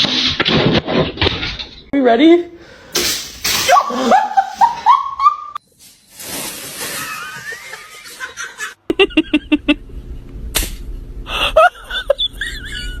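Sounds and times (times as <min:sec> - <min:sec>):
noisy hiss: 0:02.7 - 0:04.9
sharp slap: 0:03.0 - 0:04.1, 0:10.6 - 0:10.8
person laughing: 0:03.7 - 0:05.6, 0:07.2 - 0:09.8, 0:11.3 - 0:13.0.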